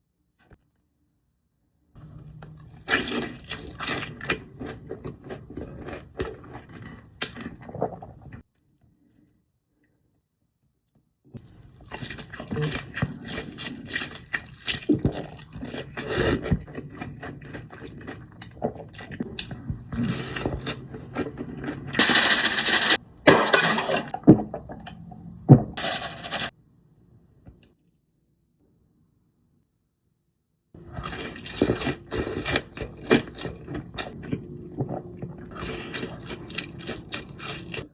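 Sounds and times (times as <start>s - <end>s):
food packaging rustling and crinkling: 25.8s - 26.5s.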